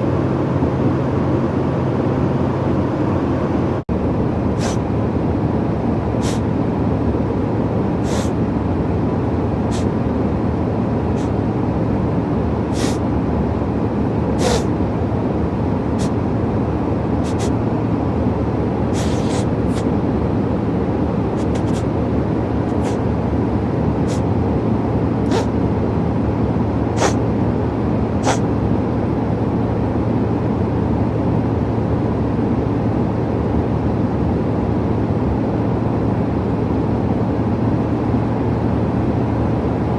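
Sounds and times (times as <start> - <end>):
plane cabin drone: 0.0 - 39.9
man sniffling: 6.2 - 6.4, 8.0 - 8.4, 12.8 - 13.0, 14.4 - 14.7, 17.2 - 17.5, 19.0 - 19.8, 21.4 - 21.8, 22.7 - 23.0, 25.3 - 25.5, 27.0 - 27.2, 28.2 - 28.4.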